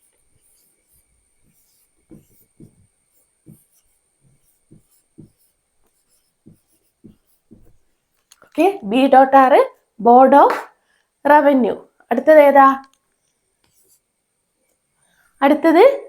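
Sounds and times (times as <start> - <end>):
pen strokes on paper: 0.0 - 8.1, 13.6 - 14.1.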